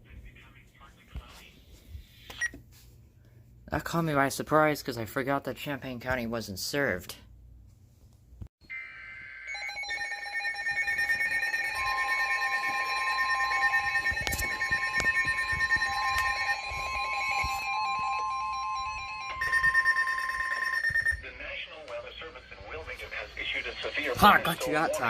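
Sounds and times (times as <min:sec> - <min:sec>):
pulsing electronic alarm beeps: 0:08.6 - 0:21.2
steady warning tone: 0:08.7 - 0:21.3, 0:23.5 - 0:25.0.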